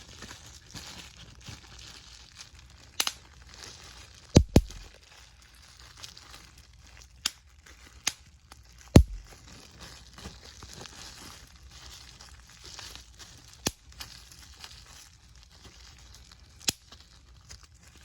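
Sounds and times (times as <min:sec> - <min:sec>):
crinkling as something is handled: 0:00.0 - 0:18.0
sharp pops: 0:04.4 - 0:04.9, 0:09.0 - 0:09.3.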